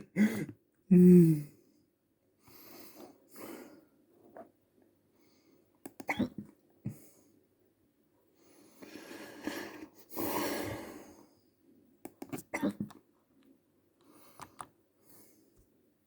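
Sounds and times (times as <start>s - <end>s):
person hiccuping: 6.0s - 6.5s, 12.4s - 13.0s
long breath in: 8.5s - 11.3s.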